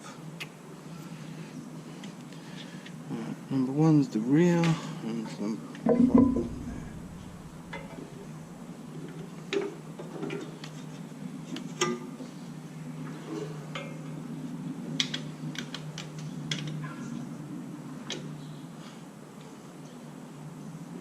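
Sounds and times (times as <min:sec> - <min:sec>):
low hum: 0:05.9 - 0:08.9.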